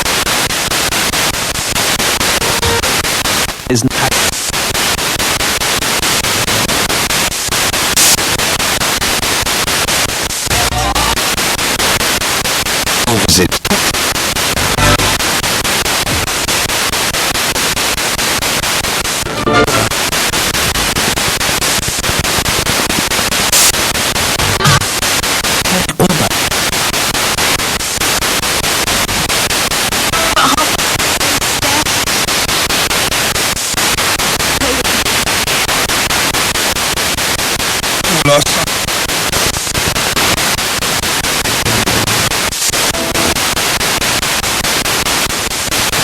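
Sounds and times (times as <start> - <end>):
choppy radio static: 0.0 - 46.0
broadcast music snatches: 1.7 - 5.0, 6.0 - 8.7, 9.8 - 12.1, 12.9 - 17.0, 19.2 - 27.6, 41.2 - 44.8
broadcast voices: 2.3 - 4.7, 6.1 - 7.2, 7.9 - 8.4, 12.9 - 16.5, 21.9 - 26.7, 30.1 - 32.1, 34.4 - 36.1, 38.0 - 40.6, 41.3 - 43.4.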